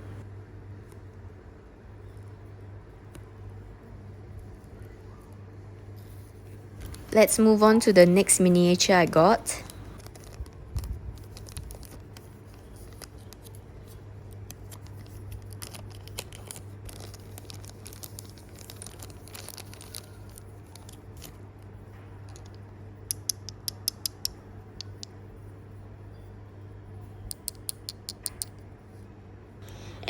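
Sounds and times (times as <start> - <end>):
steady low hum: 0.0 - 30.0
plastic packaging rustling: 9.6 - 21.4
sharp clicks: 22.3 - 25.1, 27.3 - 28.6.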